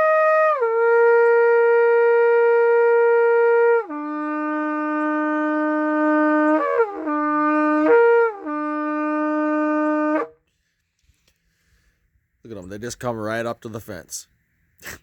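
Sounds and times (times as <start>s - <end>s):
shofar blowing: 0.0s - 10.5s.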